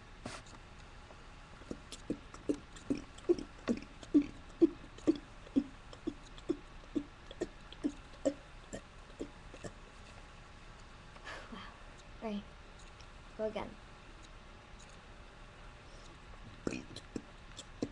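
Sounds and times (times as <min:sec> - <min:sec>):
person burping: 0:02.0 - 0:09.8, 0:16.7 - 0:17.2.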